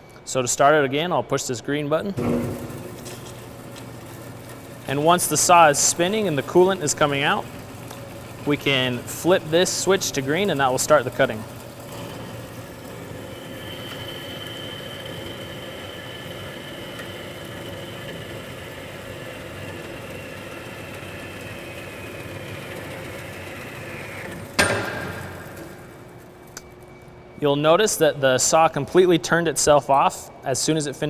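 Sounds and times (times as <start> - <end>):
loud clunk of saw: 2.2 - 19.0, 19.6 - 26.2
bandsaw cutting metal: 2.2 - 26.8.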